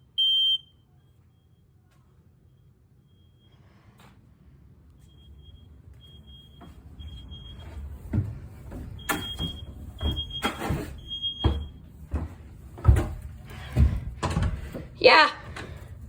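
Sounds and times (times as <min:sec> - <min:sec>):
smoke alarm beeping: 0:00.0 - 0:00.9, 0:05.0 - 0:08.1, 0:08.8 - 0:11.9.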